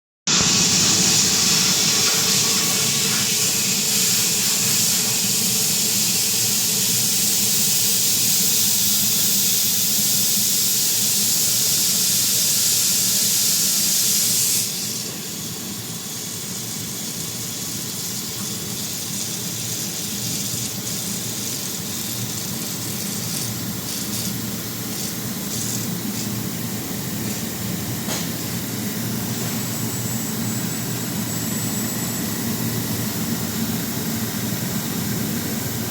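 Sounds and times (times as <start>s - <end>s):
gas hissing from compressor: 0.3s - 18.4s.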